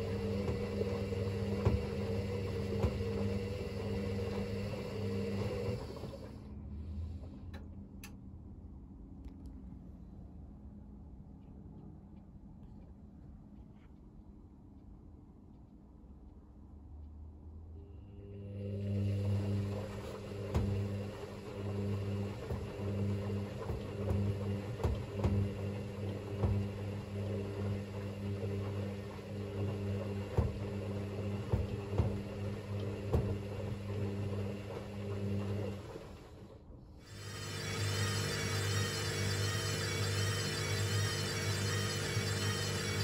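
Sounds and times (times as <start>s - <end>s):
washing machine motor humming: 0.0s - 6.5s, 18.2s - 43.0s.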